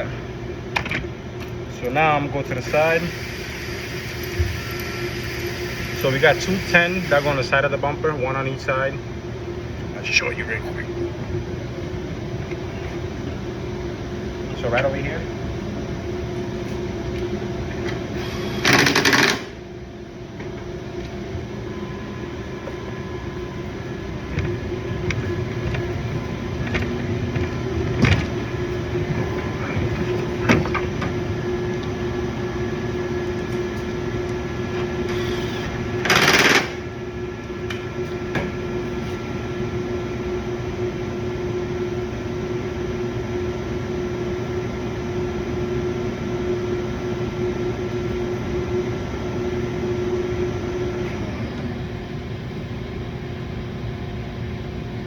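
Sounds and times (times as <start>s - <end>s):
steady background hum: 0.0s - 55.0s
power tool driving a bolt: 18.2s - 19.5s
knocks and clicks of parts: 18.6s - 19.6s.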